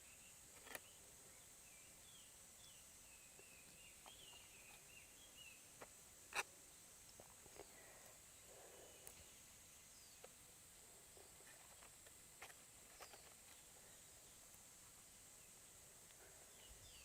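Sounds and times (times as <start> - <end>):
bird chirps: 0.0 - 5.7, 12.9 - 14.4, 16.3 - 17.0
high insect drone: 0.0 - 17.0.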